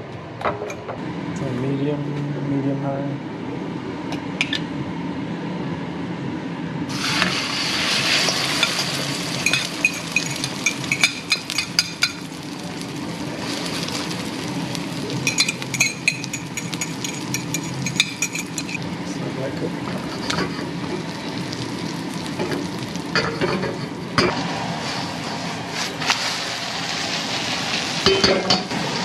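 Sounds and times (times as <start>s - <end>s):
food sizzling in a pan: 6.9s - 18.9s, 19.8s - 29.0s
utensil clinking and scraping pan: 8.2s - 12.2s, 15.2s - 18.8s.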